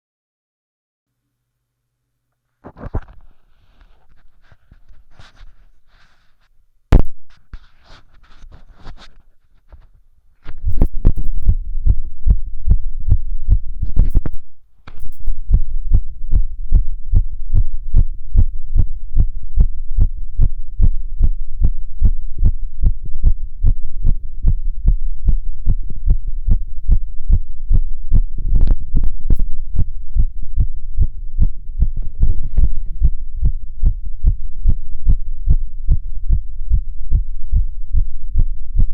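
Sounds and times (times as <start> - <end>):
faint rustling: 2.4 - 6.6, 7.3 - 10.9
fast heartbeat through stethoscope: 10.6 - 14.4, 15.0 - 38.9.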